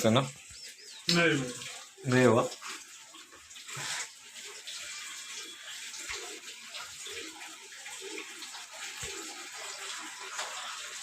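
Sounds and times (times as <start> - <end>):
water splashing in washing machine: 0.0 - 11.0.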